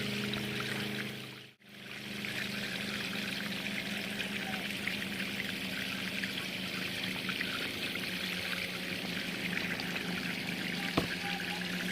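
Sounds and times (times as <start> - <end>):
low hum: 0.0 - 11.9
water pouring over stones: 1.6 - 11.9.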